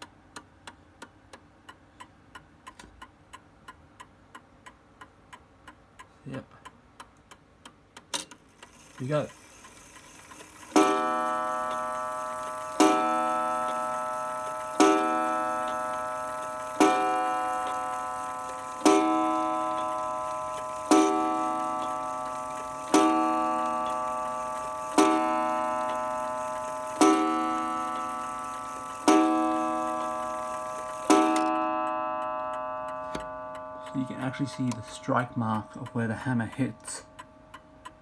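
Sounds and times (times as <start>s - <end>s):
clock striking gong rod: 10.6s - 37.5s.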